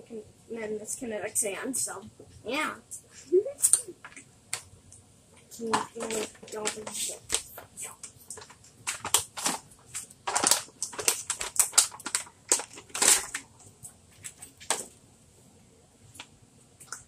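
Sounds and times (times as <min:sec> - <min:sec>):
crunchy material crackling: 0:05.4 - 0:15.1.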